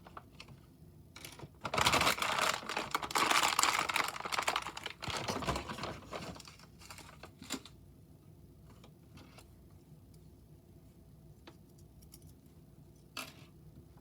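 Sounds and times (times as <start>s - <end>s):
plastic packaging crackling: 1.5s - 7.6s.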